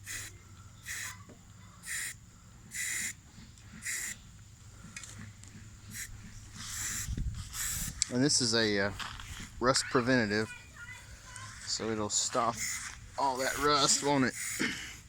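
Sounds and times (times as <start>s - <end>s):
aerosol spray can hissing: 0.0s - 1.2s, 1.8s - 3.2s, 3.8s - 4.2s, 5.9s - 8.0s, 12.6s - 12.8s, 14.3s - 14.6s.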